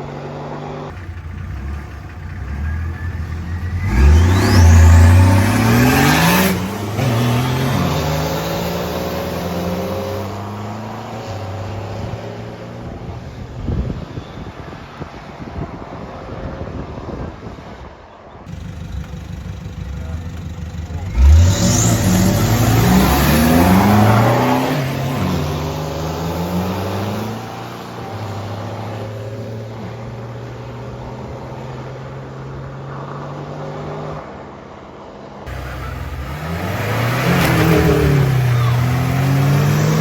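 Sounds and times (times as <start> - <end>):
vehicle engine revving: 0.9 - 12.2, 18.5 - 29.4, 35.5 - 40.0.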